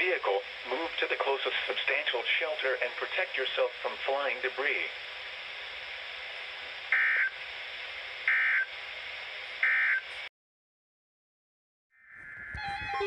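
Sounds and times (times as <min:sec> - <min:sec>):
radio hiss: 0:00.0 - 0:10.3.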